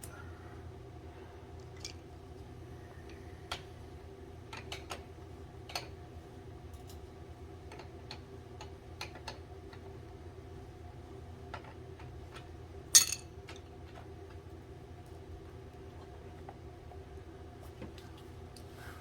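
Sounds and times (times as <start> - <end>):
steady low hum: 0.0 - 7.6.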